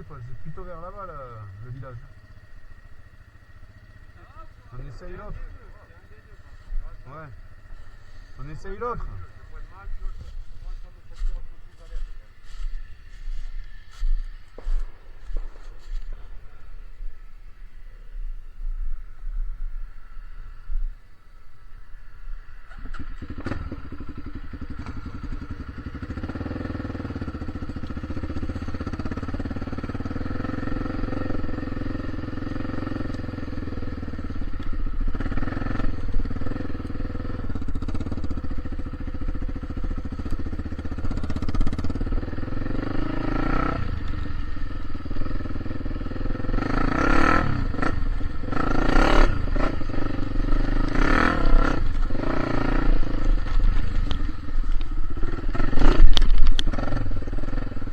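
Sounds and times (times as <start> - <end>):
vehicle engine running: 0.0 - 57.9
engine clatter: 22.6 - 57.9.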